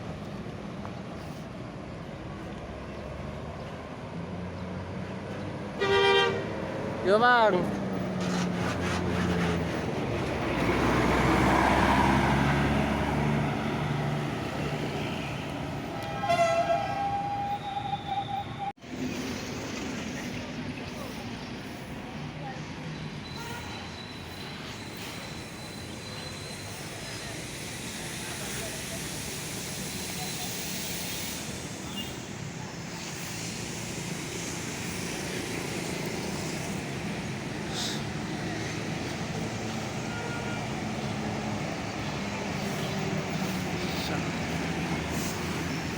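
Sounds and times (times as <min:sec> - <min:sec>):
bus engine passing: 0:00.0 - 0:45.9
road traffic noise: 0:00.0 - 0:45.9.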